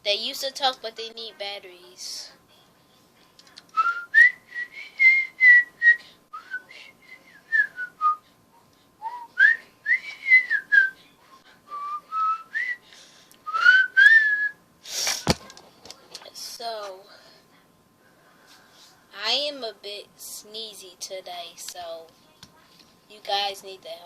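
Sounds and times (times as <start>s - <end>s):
person whistling: 3.8s - 8.2s, 9.0s - 11.0s, 11.7s - 12.8s, 13.5s - 14.6s.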